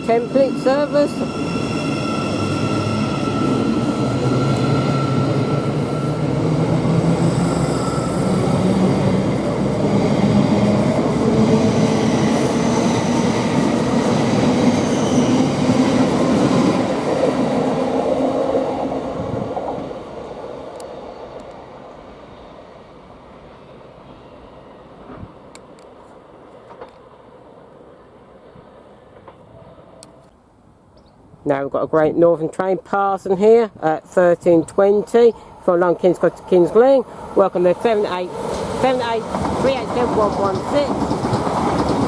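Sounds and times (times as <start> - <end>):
train wheels rumbling: 34.7 - 42.0.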